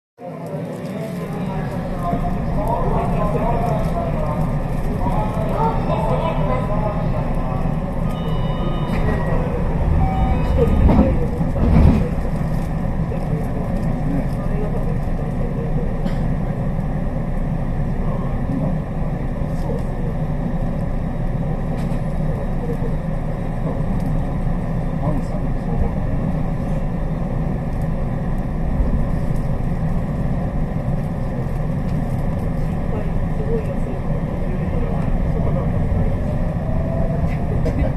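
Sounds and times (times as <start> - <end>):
electric train rumble: 0.4 - 37.9
train knocks: 7.8 - 13.1.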